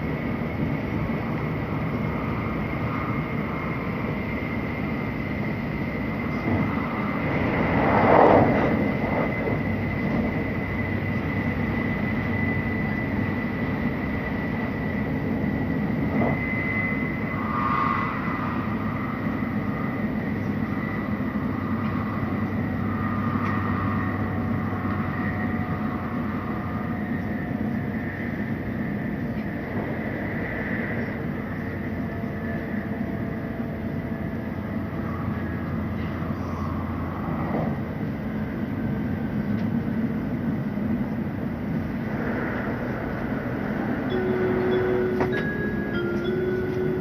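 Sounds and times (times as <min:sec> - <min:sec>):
train rumble: 0:00.0 - 0:47.0
rushing air: 0:00.2 - 0:26.5, 0:36.7 - 0:44.6
high whine: 0:00.5 - 0:33.5, 0:41.6 - 0:47.0.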